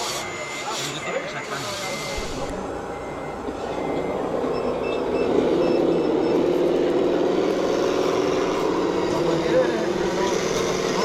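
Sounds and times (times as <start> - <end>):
high electronic beeps: 0.0 - 7.7
model motor hum: 7.0 - 11.0.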